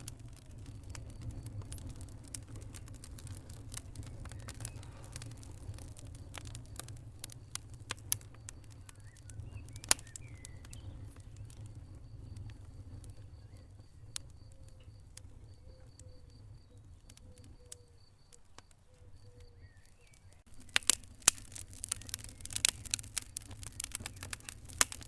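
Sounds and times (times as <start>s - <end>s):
low steady rumble: 0.0s - 16.7s
fire pops and snaps: 0.0s - 25.0s
wood fire crackling: 0.0s - 25.0s.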